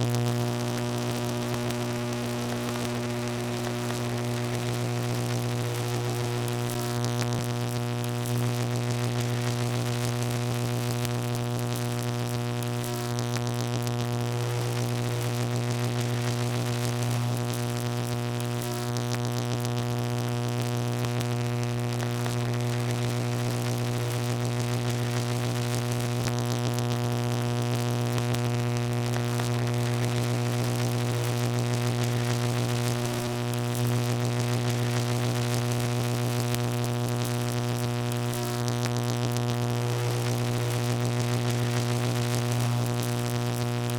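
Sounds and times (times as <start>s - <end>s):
electrical hum: 0.0s - 43.9s.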